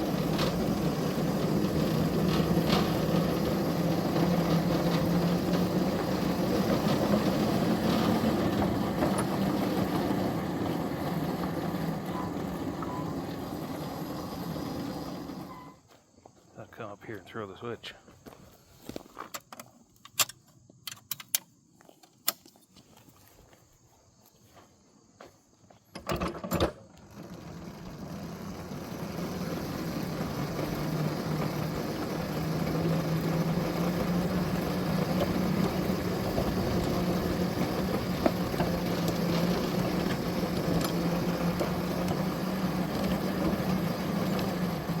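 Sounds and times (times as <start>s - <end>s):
engine humming: 0.0s - 16.0s, 26.9s - 45.0s
scattered clicks: 19.3s - 22.5s.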